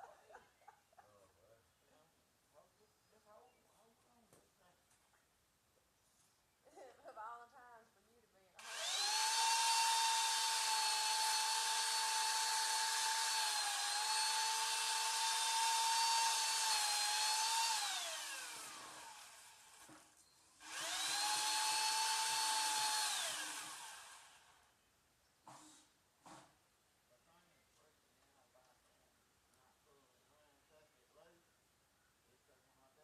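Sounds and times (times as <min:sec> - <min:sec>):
power tool motor whining: 0:08.6 - 0:24.7.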